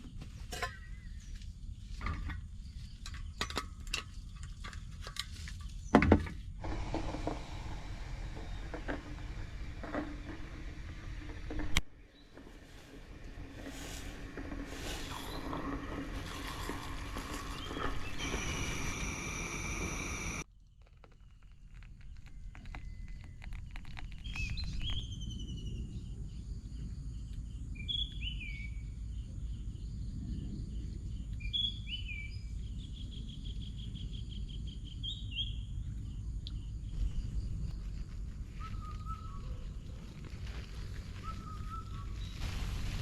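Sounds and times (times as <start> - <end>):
low rushing background: 6.6 - 15.5.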